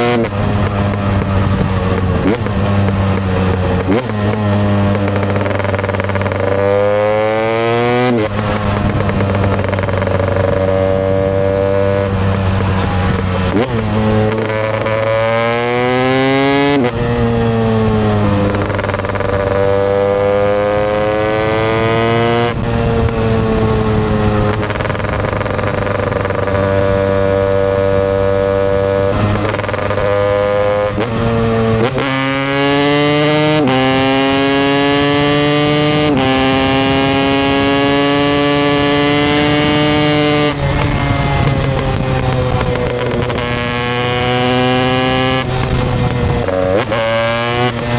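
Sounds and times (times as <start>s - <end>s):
dirt bike engine revving: 0.0s - 47.9s.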